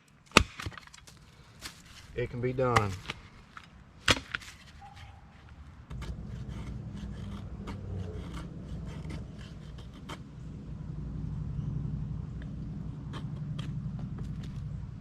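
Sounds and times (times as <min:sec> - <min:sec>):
knife scraping on wood: 0:04.4 - 0:10.6, 0:13.0 - 0:14.6
low steady rumble: 0:05.7 - 0:15.0.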